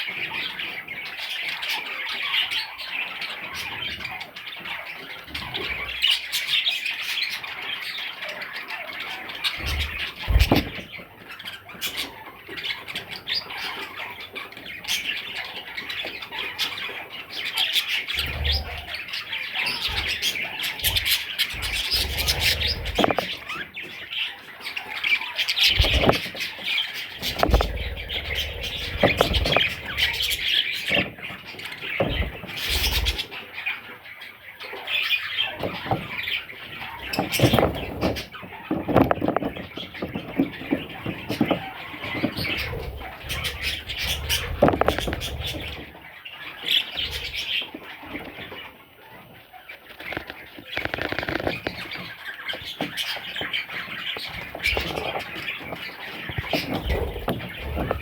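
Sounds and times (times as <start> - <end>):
budgerigars chirping: 0.1 - 58.0
wings flapping: 18.1 - 23.7, 25.6 - 31.2, 41.1 - 46.0.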